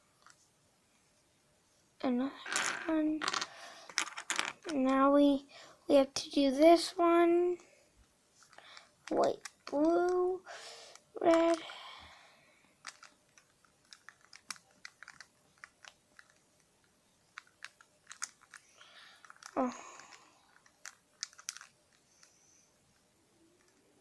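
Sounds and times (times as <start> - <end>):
plastic cube pieces clicking: 2.5 - 4.8, 8.5 - 10.3, 10.9 - 11.7, 12.8 - 16.4, 17.3 - 22.3.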